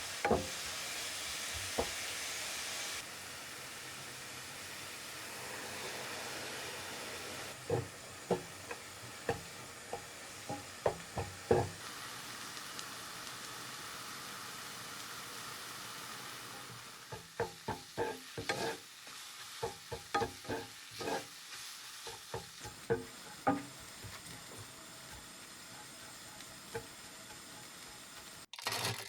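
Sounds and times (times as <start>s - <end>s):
food sizzling in a pan: 0.0s - 29.0s
utensil scraping a pan: 7.6s - 11.8s, 17.4s - 18.9s, 19.6s - 24.3s.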